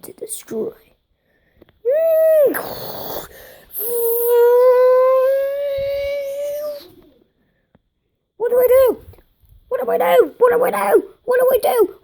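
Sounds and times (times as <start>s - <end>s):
child making mouth sound effects: 1.9s - 7.2s.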